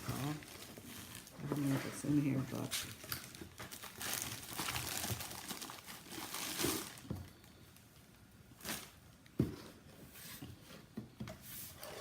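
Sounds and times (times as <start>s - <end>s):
packaging rustling: 0.0s - 7.4s.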